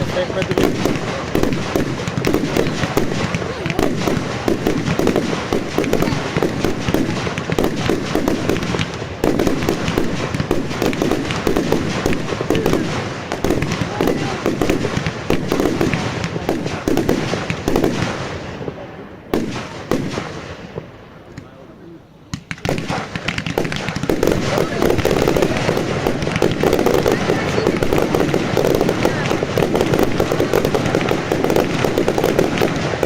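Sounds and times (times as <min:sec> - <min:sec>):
fireworks crackling and banging: 0:00.0 - 0:33.0.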